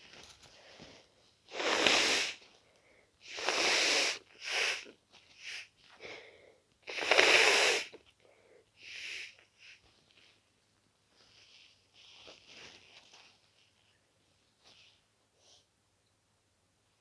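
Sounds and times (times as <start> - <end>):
person blowing nose hard: 1.5 - 2.4, 3.3 - 4.9, 6.9 - 8.0
short sniffs: 1.5 - 2.4, 3.3 - 6.2, 6.9 - 8.0.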